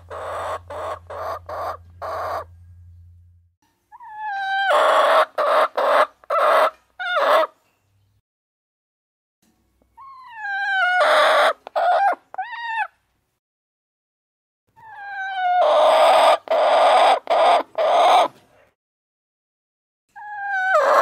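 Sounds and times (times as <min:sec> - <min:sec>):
chickens squawking: 0:00.0 - 0:02.5, 0:03.9 - 0:07.6, 0:10.0 - 0:13.0, 0:14.8 - 0:18.4, 0:20.2 - 0:21.0.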